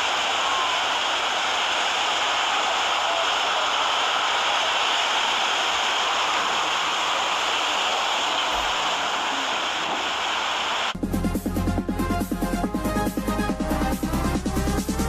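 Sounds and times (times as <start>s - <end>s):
water rushing: 0.4s - 11.0s.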